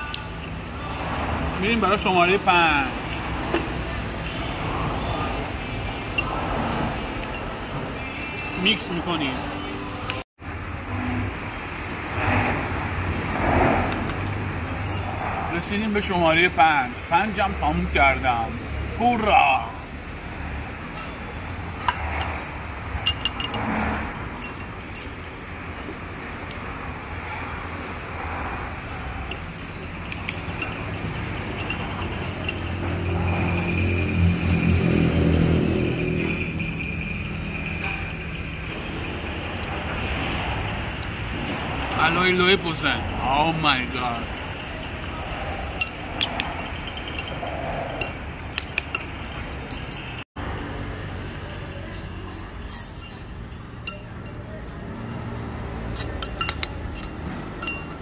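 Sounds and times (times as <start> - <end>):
steady background noise: 0.0 - 58.0
tableware clinking: 23.0 - 23.8, 51.9 - 54.4, 55.9 - 58.0.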